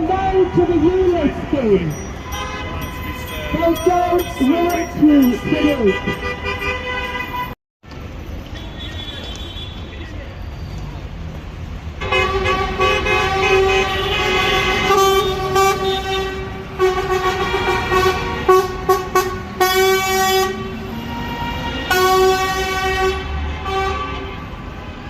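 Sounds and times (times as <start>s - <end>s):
vehicle horn honking: 0.4s - 7.6s, 12.0s - 24.6s.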